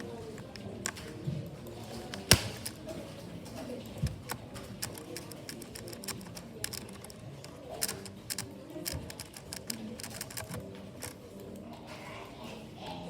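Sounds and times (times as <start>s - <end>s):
keyboard keys clicking: 0.0s - 1.2s, 2.0s - 3.0s, 3.7s - 11.6s.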